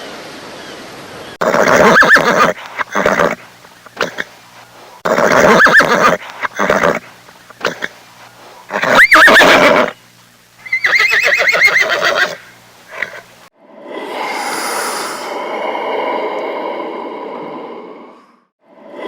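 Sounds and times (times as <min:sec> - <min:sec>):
horse whinnying: 0:01.4 - 0:03.4, 0:05.0 - 0:07.0, 0:08.7 - 0:10.0, 0:10.7 - 0:13.3
breathy rushing sound: 0:13.5 - 0:19.0.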